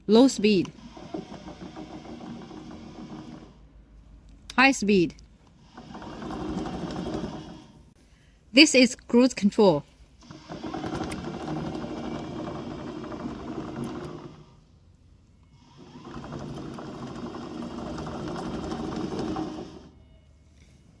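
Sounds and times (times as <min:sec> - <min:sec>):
gear motors whirring: 0:00.0 - 0:03.8, 0:05.0 - 0:08.0, 0:10.2 - 0:14.7, 0:15.4 - 0:20.0.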